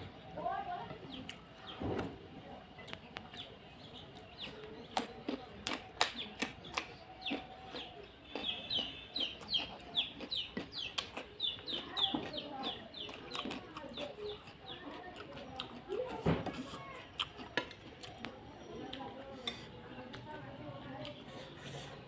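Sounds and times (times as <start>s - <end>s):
bird chirping: 6.2s - 15.7s.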